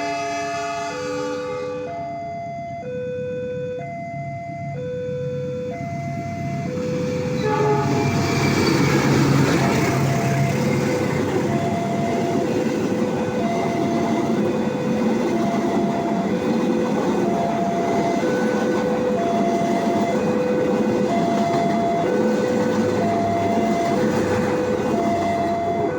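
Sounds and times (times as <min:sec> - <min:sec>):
level crossing two-tone alarm: 0:00.9 - 0:25.9
train wheels rumbling on rails: 0:05.6 - 0:25.9.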